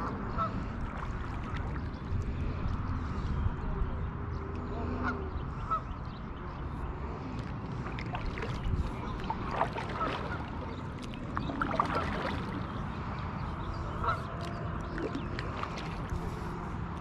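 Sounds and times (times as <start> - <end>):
wind and water rumble: 0.0 - 17.0
waterfowl honking: 9.5 - 10.6, 14.0 - 14.4.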